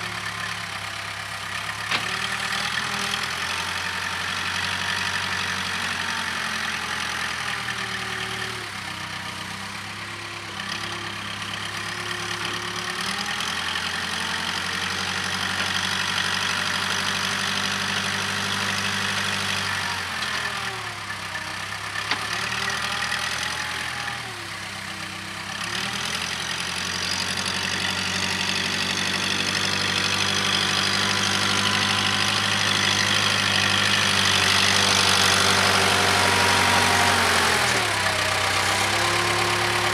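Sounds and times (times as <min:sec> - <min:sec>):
diesel engine running: 0:25.4 - 0:39.9.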